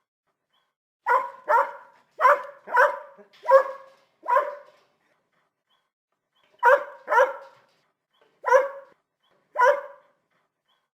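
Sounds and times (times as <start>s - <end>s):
dog barking: 1.0s - 4.8s, 6.6s - 7.7s, 8.4s - 10.2s.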